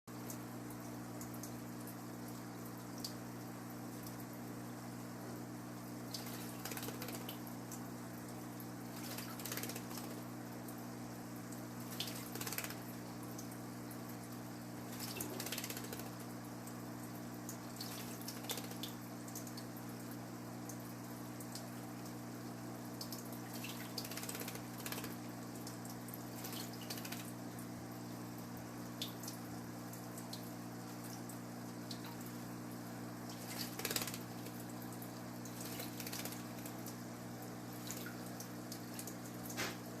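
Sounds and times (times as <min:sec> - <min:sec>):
bird splashing water: 0:06.1 - 0:07.8, 0:08.8 - 0:10.4, 0:11.8 - 0:13.1, 0:14.8 - 0:16.3, 0:17.7 - 0:19.0, 0:23.0 - 0:25.3, 0:26.2 - 0:27.7, 0:33.2 - 0:39.8.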